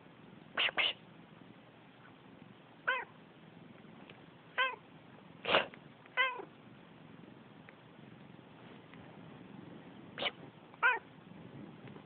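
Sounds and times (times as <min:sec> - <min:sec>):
cat meowing: 0:02.8 - 0:03.1, 0:04.6 - 0:04.8, 0:06.2 - 0:06.5, 0:10.2 - 0:11.1
person sneezing: 0:05.4 - 0:05.7.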